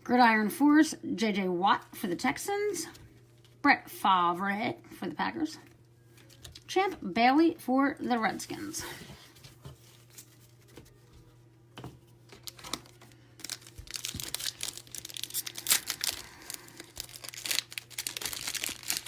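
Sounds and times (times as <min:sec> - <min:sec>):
foil wrapper crinkling and tearing: 0:12.3 - 0:19.0.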